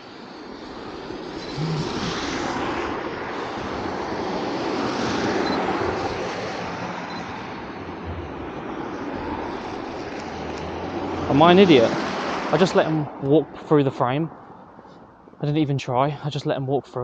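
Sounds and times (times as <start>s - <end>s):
vehicle driving on snow: 0.0s - 13.2s.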